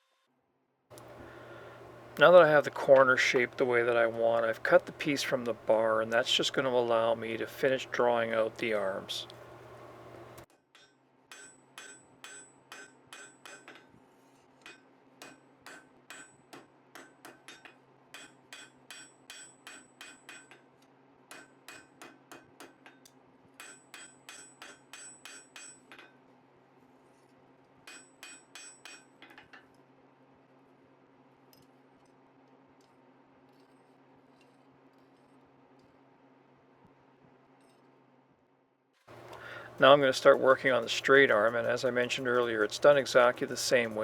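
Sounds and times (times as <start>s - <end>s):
steady low hum: 0.9s - 10.4s, 39.1s - 44.0s
hammer striking steel on anvil: 11.3s - 13.8s.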